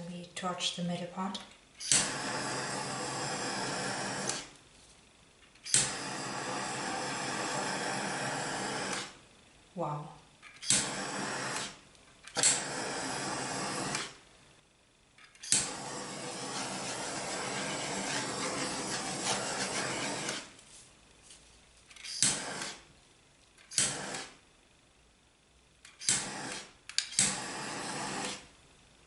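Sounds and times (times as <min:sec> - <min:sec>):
torch flame hissing: 0:01.8 - 0:04.6, 0:05.6 - 0:09.4, 0:10.6 - 0:14.3, 0:15.4 - 0:20.7, 0:22.0 - 0:22.9, 0:23.7 - 0:24.4, 0:25.9 - 0:28.6
torch ignition click: 0:01.8 - 0:04.6, 0:05.5 - 0:09.2, 0:10.5 - 0:14.2, 0:15.2 - 0:20.6, 0:22.0 - 0:22.9, 0:23.6 - 0:24.4, 0:25.8 - 0:28.5.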